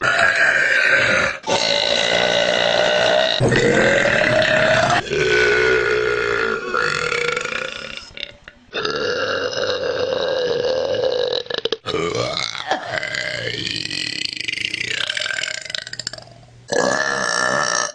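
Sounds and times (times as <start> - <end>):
woman burping: 0.0 - 13.6.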